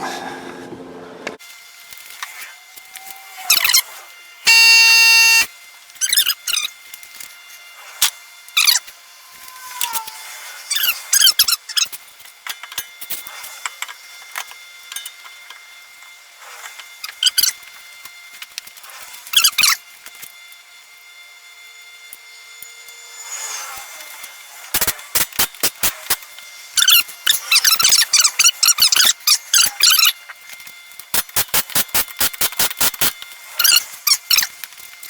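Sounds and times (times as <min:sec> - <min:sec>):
tool squeaks: 0:04.5 - 0:06.7, 0:33.6 - 0:34.5.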